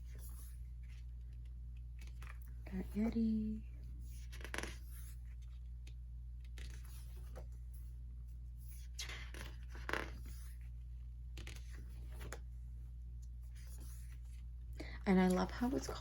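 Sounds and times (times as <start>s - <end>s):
paper cards rustling: 0.0s - 3.2s, 4.1s - 7.7s, 8.7s - 12.5s
steady low hum: 0.0s - 16.0s.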